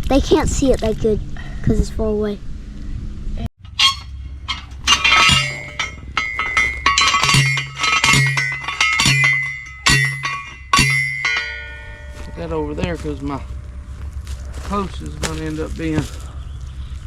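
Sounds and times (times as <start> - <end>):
post driver clanking on fence post: 3.6 - 12.9.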